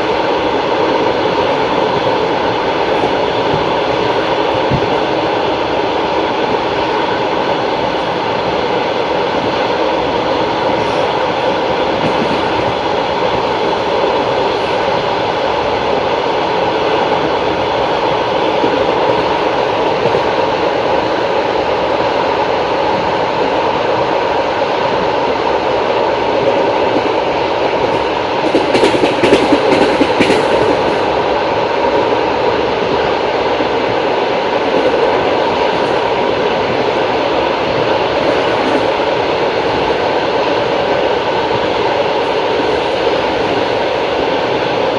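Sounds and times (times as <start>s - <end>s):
train wheels rumbling on rails: 0.0s - 44.9s
sharp train wheel clacks: 27.8s - 31.1s.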